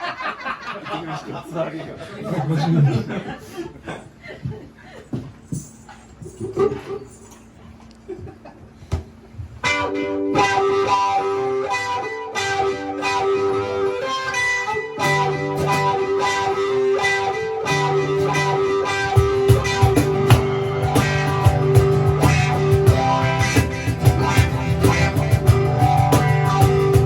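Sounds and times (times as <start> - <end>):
electric guitar sustained notes: 9.6 - 27.0
heavy low guitar hits: 17.7 - 27.0.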